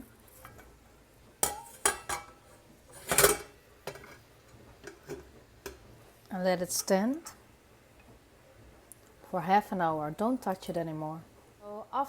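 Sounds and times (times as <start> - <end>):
metal lid clattering on pan: 1.4 - 4.2, 4.8 - 5.8.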